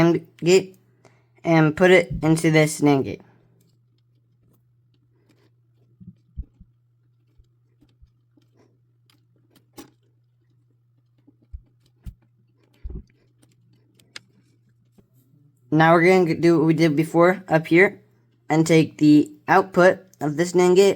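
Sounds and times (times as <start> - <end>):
faint steady hum: 0.0 - 20.9
wires clicking into breadboard: 3.6 - 15.1.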